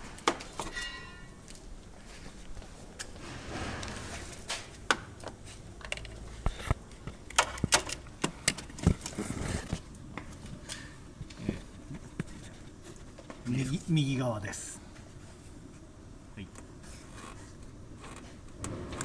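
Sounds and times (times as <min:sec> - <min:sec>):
clicks and knocks of suspension parts: 0:03.0 - 0:13.5.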